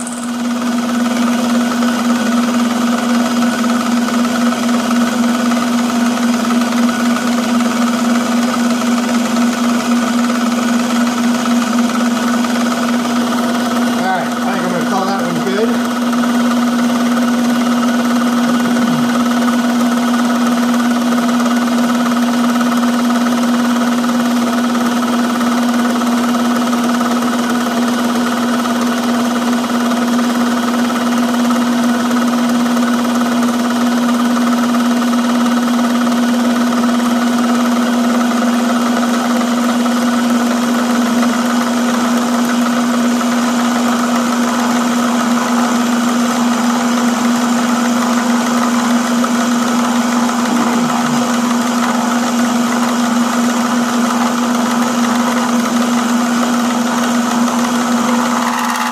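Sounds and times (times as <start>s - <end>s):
machine tool humming: 0.0s - 58.9s.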